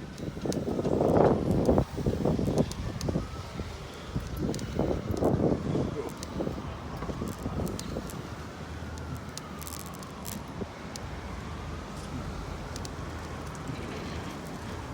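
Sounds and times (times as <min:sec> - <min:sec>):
distant siren wailing: 0:00.0 - 0:14.9
wind rumble on microphone: 0:00.0 - 0:14.9
sharp ticks: 0:06.1 - 0:08.2.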